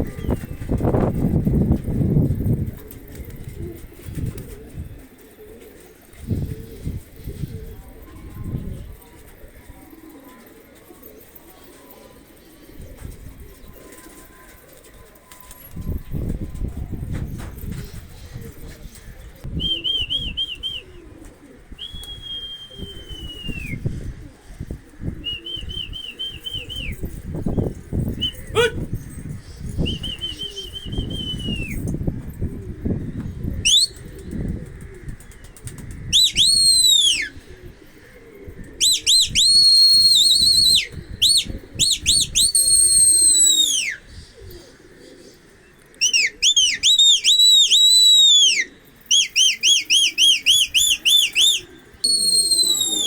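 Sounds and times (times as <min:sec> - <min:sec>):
pigeon wings flapping: 0:00.1 - 0:19.2
high whistled bird calls: 0:33.6 - 0:34.1, 0:36.1 - 0:37.4, 0:38.8 - 0:44.1, 0:46.0 - 0:53.0.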